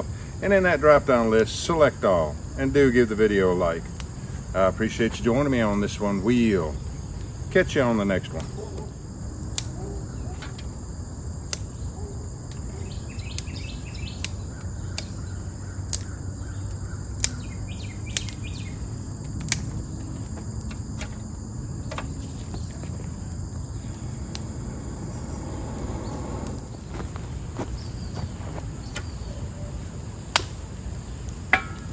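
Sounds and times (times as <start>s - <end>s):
crickets chirring: 0.0s - 31.9s
sharp snaps: 3.9s - 4.5s, 8.3s - 10.8s, 11.4s - 21.2s, 23.8s - 31.9s.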